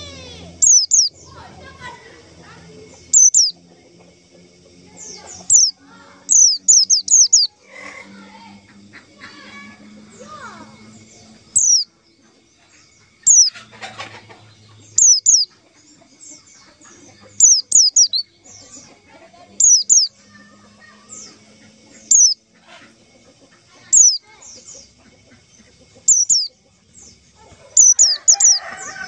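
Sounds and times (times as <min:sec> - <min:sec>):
bird high downward calls: 0:00.0 - 0:04.1, 0:04.8 - 0:29.0
faint bird twittering: 0:00.0 - 0:29.0.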